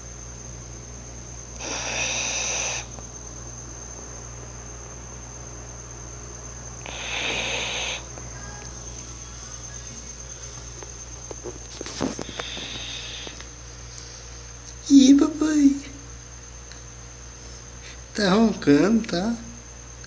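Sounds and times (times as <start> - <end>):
person snoring: 1.6 - 2.9, 6.8 - 8.1.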